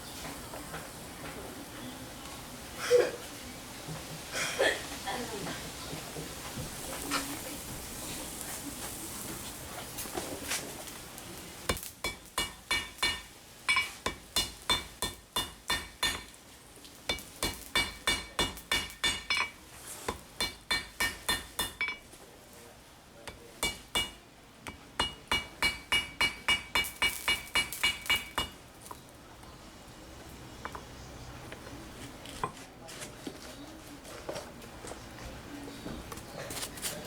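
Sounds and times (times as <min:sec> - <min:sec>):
hammer striking steel: 0:11.7 - 0:16.4, 0:17.1 - 0:22.1, 0:23.3 - 0:28.6.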